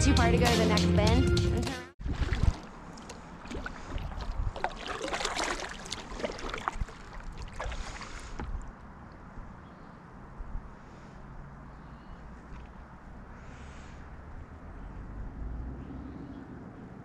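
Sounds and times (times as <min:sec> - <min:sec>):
wind: 0:01.7 - 0:17.0
paddle strokes splashing water: 0:02.0 - 0:09.2.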